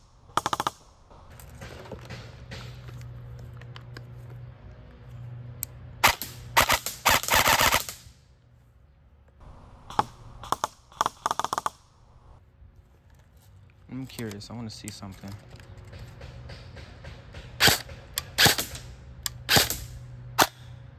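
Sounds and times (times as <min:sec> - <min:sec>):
airsoft rifle shooting: 0:00.0 - 0:01.3, 0:06.0 - 0:08.1, 0:09.9 - 0:12.0, 0:17.6 - 0:20.6.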